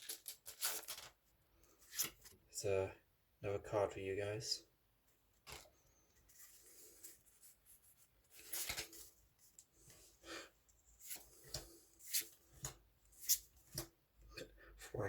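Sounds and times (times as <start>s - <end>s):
cards sliding and flipping: 8.3s - 9.1s, 11.0s - 13.8s.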